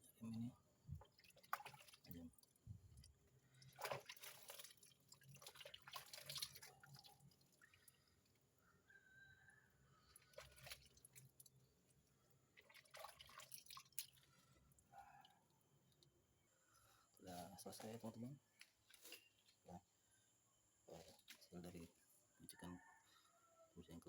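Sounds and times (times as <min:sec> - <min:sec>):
water drips: 0:00.0 - 0:08.4, 0:10.0 - 0:16.8.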